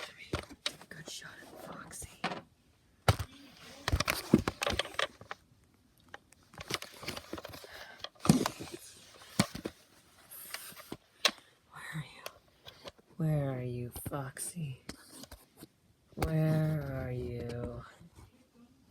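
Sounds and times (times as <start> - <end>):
handling clicks and knocks: 3.1 - 5.4.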